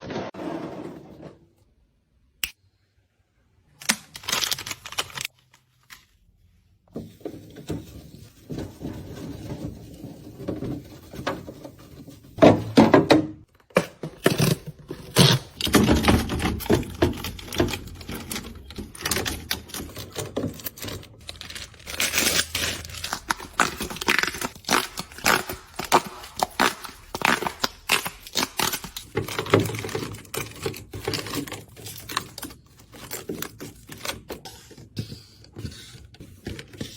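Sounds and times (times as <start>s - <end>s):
plastic packaging crinkling: 3.8s - 6.1s, 14.4s - 34.3s.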